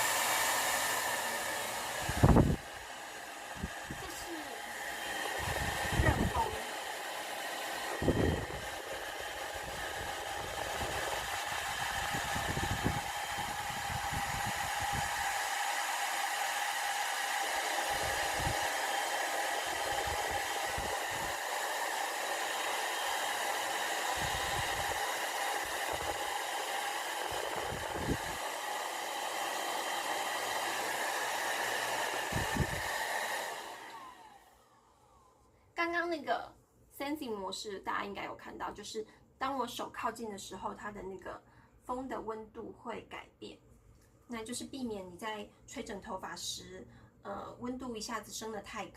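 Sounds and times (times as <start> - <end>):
hair dryer running: 0.0 - 35.3
low rumbles of air buffeting: 8.0 - 8.7.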